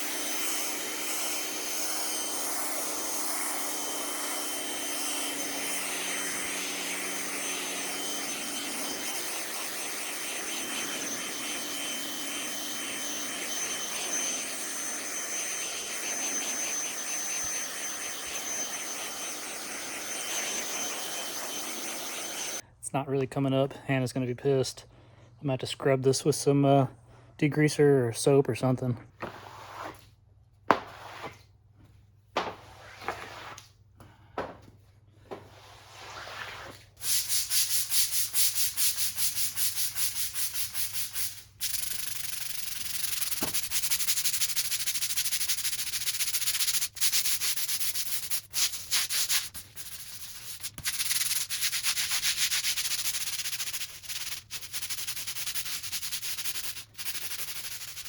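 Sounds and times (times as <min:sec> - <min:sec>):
stiff brush scrubbing: 0:35.6 - 0:58.0.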